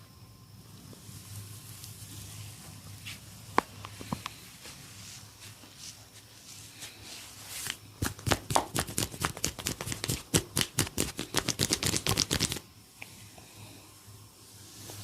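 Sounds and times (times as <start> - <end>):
soft rubbing: 4.4 - 7.8.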